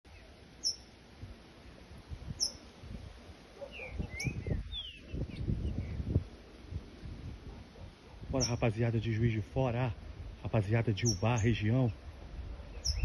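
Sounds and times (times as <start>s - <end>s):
bird chirps and whistles: 2.4s - 2.6s, 3.6s - 6.0s, 12.7s - 13.0s.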